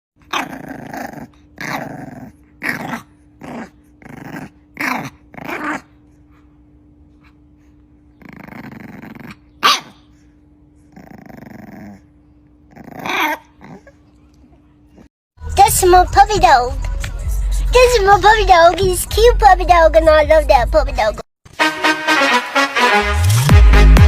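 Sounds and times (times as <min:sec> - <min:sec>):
puppy growling: 0:00.2 - 0:06.5, 0:07.1 - 0:10.2, 0:10.8 - 0:15.1
puppy barking: 0:09.6 - 0:10.1, 0:13.0 - 0:13.6.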